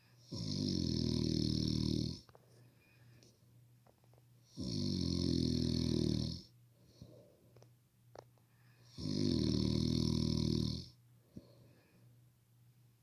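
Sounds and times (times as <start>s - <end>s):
heavy rasping snoring: 0.3s - 2.2s, 4.5s - 6.5s, 8.9s - 10.9s.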